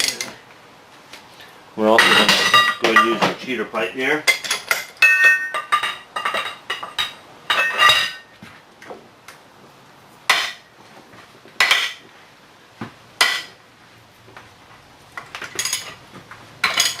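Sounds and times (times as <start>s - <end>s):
metal tools clinking: 2.0s - 3.4s, 4.3s - 8.3s, 15.5s - 16.0s, 16.6s - 17.0s.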